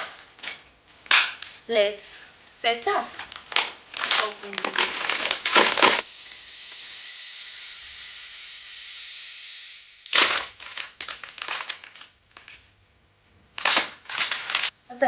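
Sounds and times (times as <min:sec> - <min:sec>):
steady high hiss: 0:00.0 - 0:12.8
plastic packaging crinkling: 0:03.2 - 0:06.1, 0:10.1 - 0:12.6, 0:13.5 - 0:14.8.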